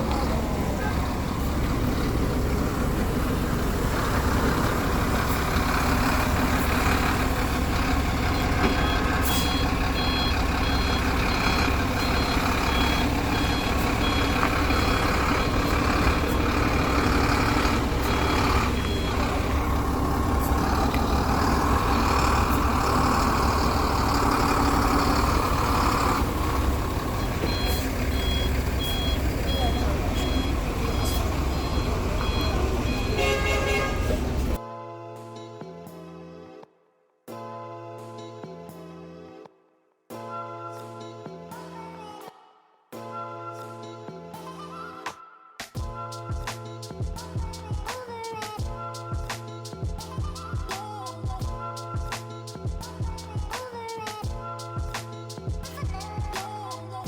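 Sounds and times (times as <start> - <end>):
low engine rumble: 0.0 - 34.6
reversing alarm beeping: 7.9 - 34.5.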